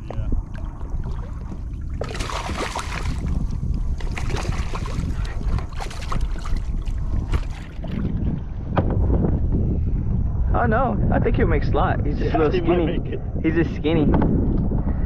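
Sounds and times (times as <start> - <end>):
water splashing and lapping: 0.0 - 8.5
wind rumbling on microphone: 0.0 - 15.0.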